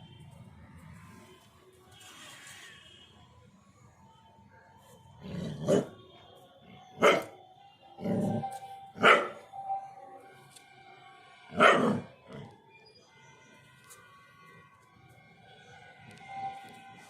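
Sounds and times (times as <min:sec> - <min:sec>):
faint background music: 0:00.0 - 0:17.0
dog barking: 0:05.5 - 0:06.0, 0:07.0 - 0:07.4, 0:09.0 - 0:09.4, 0:11.5 - 0:12.1.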